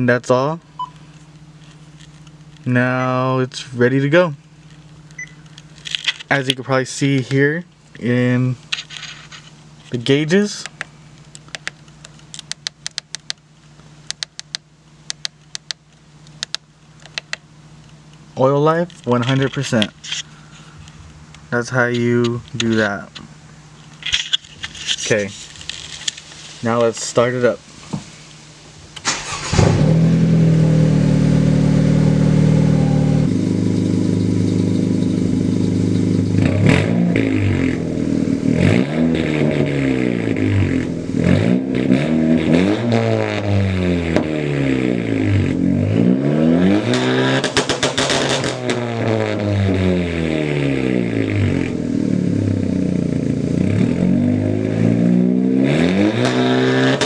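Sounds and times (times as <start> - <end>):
car engine starting: 0.0 - 57.0
car engine revving: 29.0 - 57.0.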